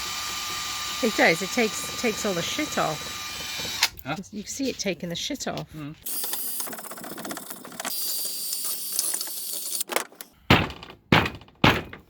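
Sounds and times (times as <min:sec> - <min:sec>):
sharp knocks: 0:10.5 - 0:12.0.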